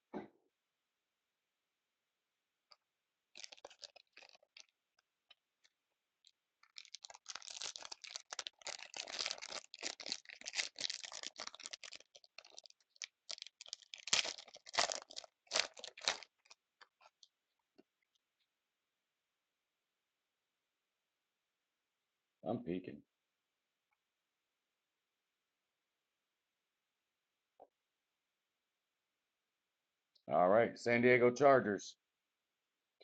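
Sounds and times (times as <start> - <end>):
packaging crinkling and tearing: 3.3 - 4.8, 5.6 - 17.3.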